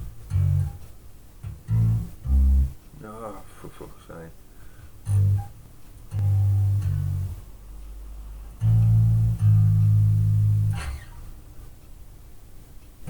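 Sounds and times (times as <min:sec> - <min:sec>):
electric bass guitar notes: 0:00.0 - 0:02.8, 0:05.0 - 0:07.5, 0:08.6 - 0:11.3.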